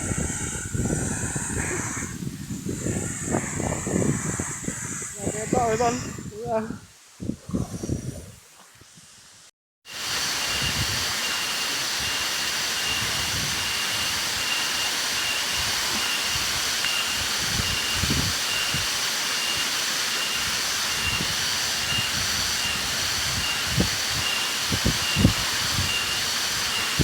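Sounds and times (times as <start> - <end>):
waterfall rushing: 9.9 - 27.0.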